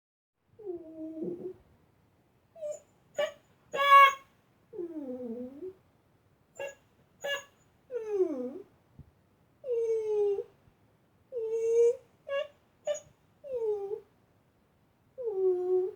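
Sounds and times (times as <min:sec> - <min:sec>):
dog squeaking and whimpering: 0:02.6 - 0:04.2, 0:06.6 - 0:08.5, 0:11.4 - 0:14.0.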